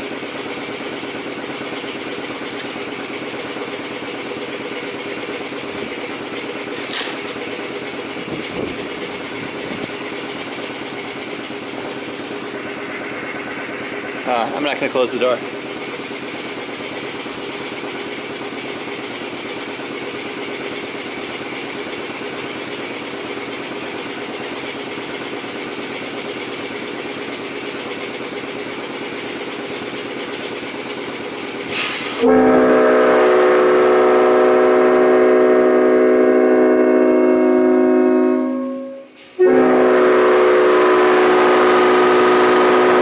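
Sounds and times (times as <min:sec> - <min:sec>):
air compressor running: 0:00.0 - 0:43.0
chime locomotive horn: 0:32.2 - 0:43.0.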